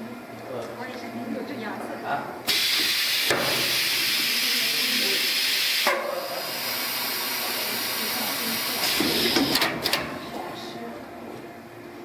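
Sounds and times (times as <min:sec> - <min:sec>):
welding machine hissing: 0:02.5 - 0:09.6.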